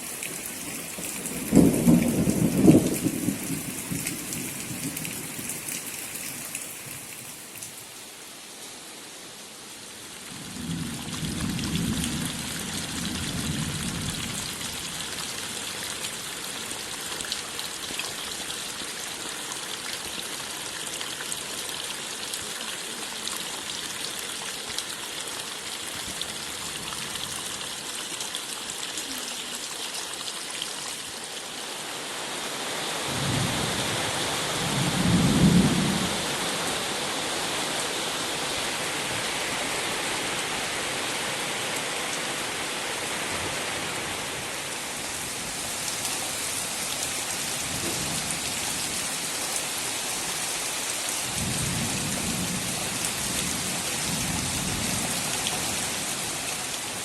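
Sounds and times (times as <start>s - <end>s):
heavy rain falling: 0.0s - 57.0s
thunder rumbling: 1.0s - 5.6s, 10.5s - 14.9s, 34.5s - 36.2s.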